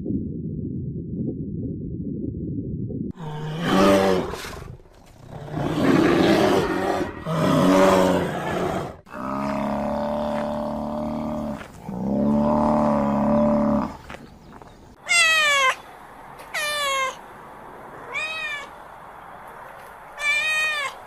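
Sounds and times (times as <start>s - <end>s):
animal roaring: 3.1s - 14.0s.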